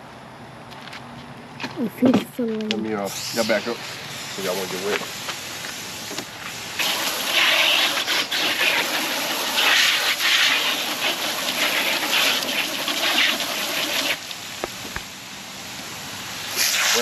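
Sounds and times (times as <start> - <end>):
water spraying onto fish fillets: 6.5 - 14.8, 16.4 - 17.0.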